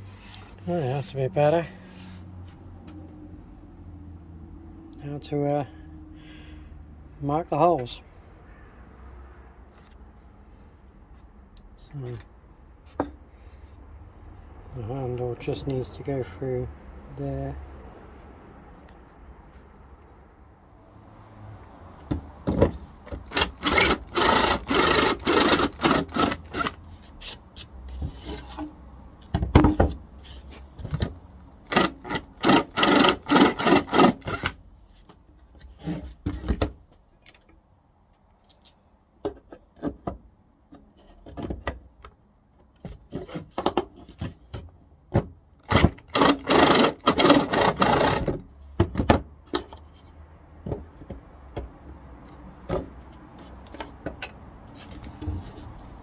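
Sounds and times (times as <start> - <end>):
hand tool rasping on wood: 23.1 - 27.4, 31.7 - 34.6, 45.7 - 48.3.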